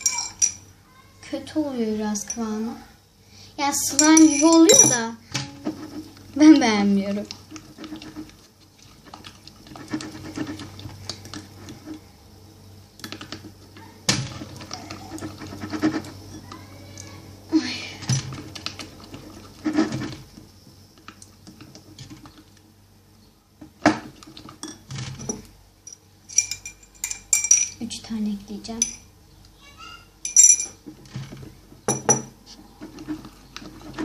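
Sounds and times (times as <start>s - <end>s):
plastic spoon stirring slime: 3.9s - 12.0s.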